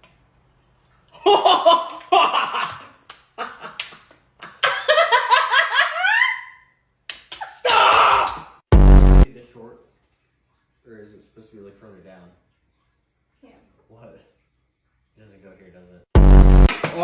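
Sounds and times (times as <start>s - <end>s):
people laughing hard: 1.2s - 6.6s.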